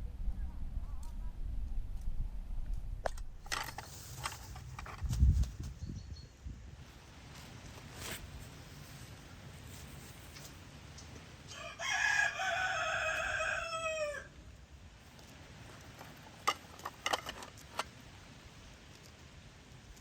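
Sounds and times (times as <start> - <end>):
rooster crowing: 11.5 - 14.4.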